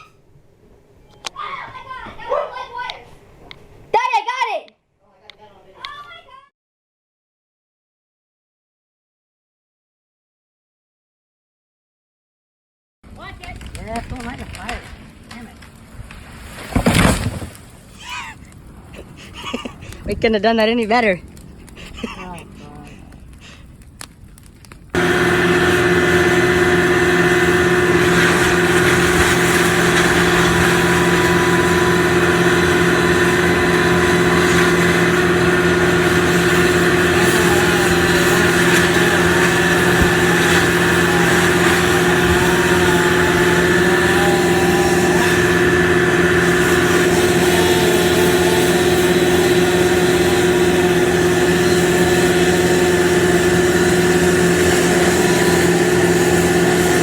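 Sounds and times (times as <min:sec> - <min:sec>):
engine running steadily: 0:18.6 - 0:57.0.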